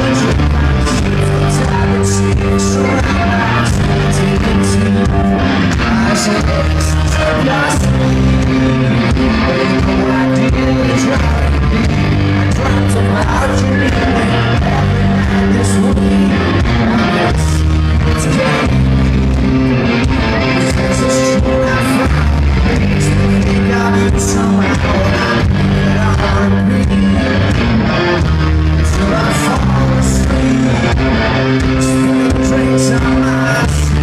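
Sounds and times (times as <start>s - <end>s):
person singing: 0.0s - 34.0s
rock band playing live: 0.0s - 34.0s.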